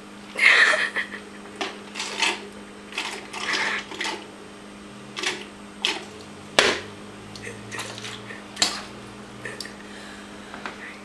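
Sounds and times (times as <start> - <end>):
person gasping and breathing out hard: 9.5 - 10.8.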